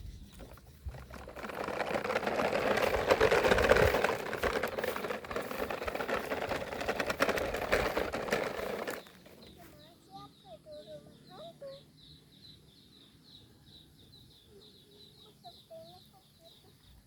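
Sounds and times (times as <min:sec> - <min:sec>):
toy vehicle rattling and whirring: 0:00.3 - 0:09.9
rapid clicking: 0:00.9 - 0:09.4.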